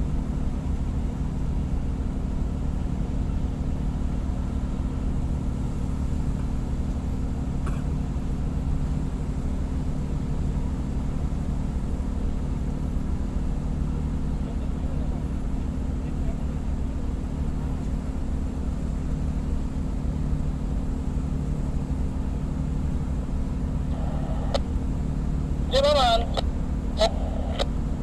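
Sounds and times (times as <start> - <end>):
ship diesel engine drone: 23.8 - 27.7.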